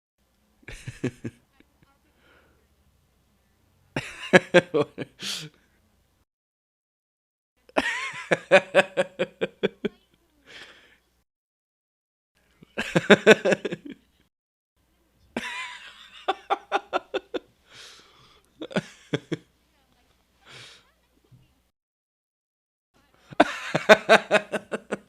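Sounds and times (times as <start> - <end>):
breath: 2.1 - 2.6, 10.4 - 11.1, 17.6 - 18.6, 20.4 - 20.9
man laughing: 7.8 - 9.9, 23.4 - 25.0.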